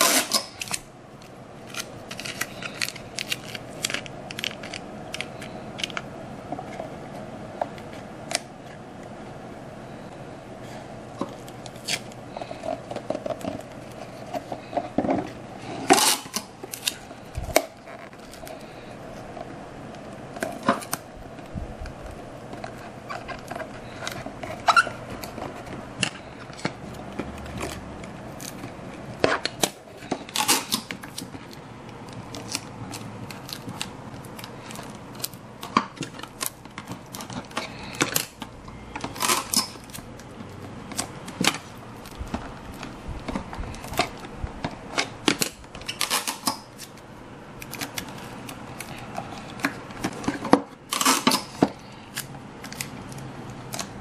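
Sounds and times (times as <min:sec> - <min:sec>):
scissors cutting cardboard: 0:00.0 - 0:00.8
faint steady hum: 0:00.0 - 0:54.0
paper rustling: 0:01.6 - 0:06.0.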